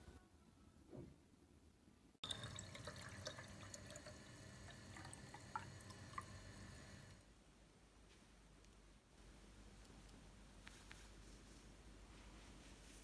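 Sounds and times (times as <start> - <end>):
water dripping and trickling: 2.2 - 7.2.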